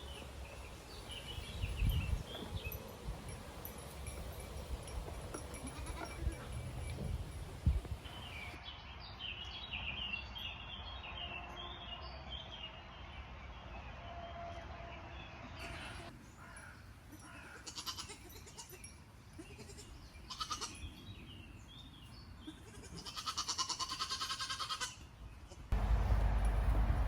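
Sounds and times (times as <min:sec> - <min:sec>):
small birds chirping: 0:00.0 - 0:10.6
goats bleating: 0:22.5 - 0:25.0
loud low rumble: 0:25.8 - 0:27.0.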